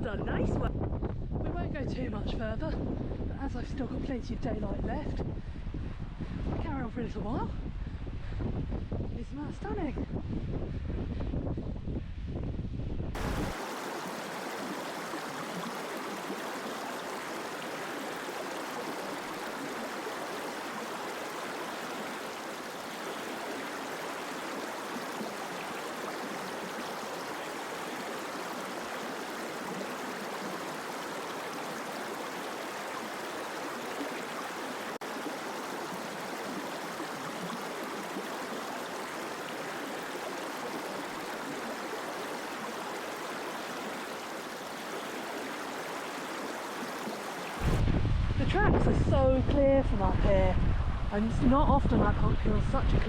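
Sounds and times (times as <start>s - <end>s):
water rushing over rocks: 13.2s - 48.0s.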